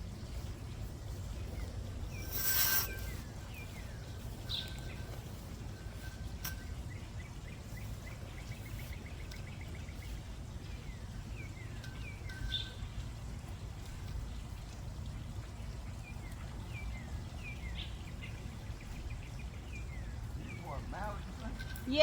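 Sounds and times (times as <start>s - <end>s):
bird trill: 11.3s - 13.0s.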